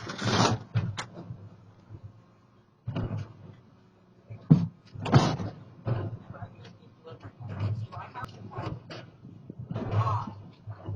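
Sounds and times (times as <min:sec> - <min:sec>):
knocks and rustles: 0:04.3 - 0:06.3.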